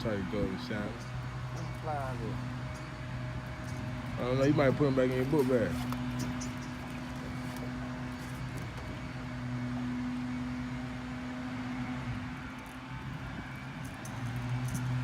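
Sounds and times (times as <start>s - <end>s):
low motor hum: 0.0s - 15.0s.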